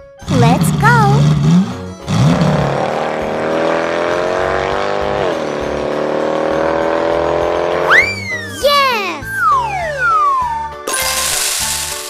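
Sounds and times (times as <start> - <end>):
cartoon vehicle engine: 0.2 - 12.0.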